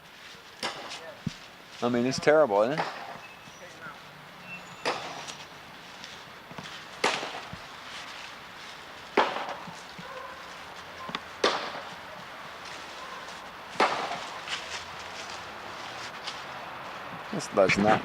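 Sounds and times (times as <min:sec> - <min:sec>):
axe chopping wood: 0:00.6 - 0:00.9, 0:02.8 - 0:03.2, 0:07.0 - 0:07.6, 0:09.2 - 0:09.7, 0:11.4 - 0:11.9, 0:13.8 - 0:14.3.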